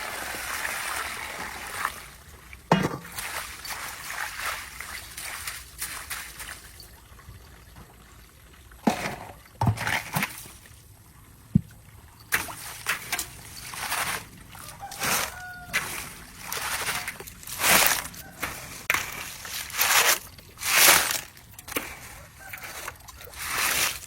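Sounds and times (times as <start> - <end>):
water splashing and trickling: 0.0 - 24.0.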